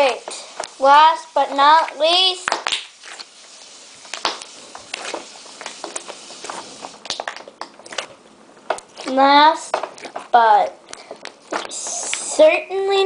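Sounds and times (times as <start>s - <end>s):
hands handling slime: 4.0s - 12.3s.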